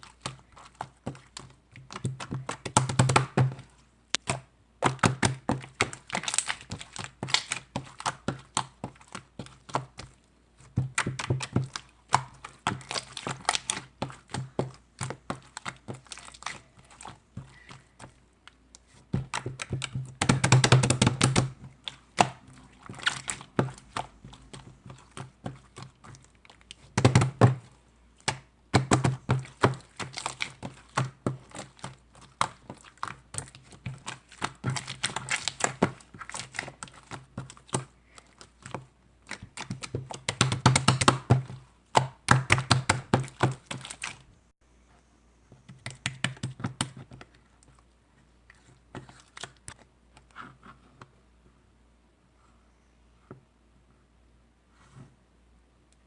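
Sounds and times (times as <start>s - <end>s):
rapid sharp clicks and taps: 19.2s - 21.6s.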